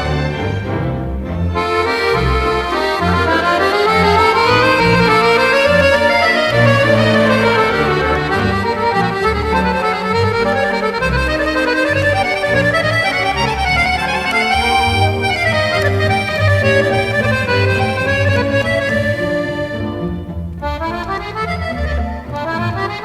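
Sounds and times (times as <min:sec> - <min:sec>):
accordion music: 0:00.0 - 0:23.0.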